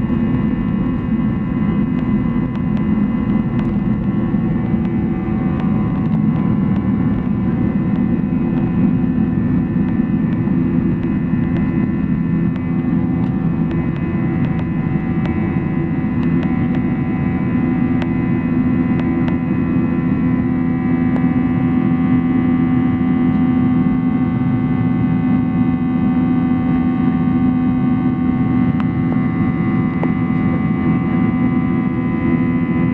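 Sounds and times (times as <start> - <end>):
jet engines at takeoff thrust: 0.0 - 32.9.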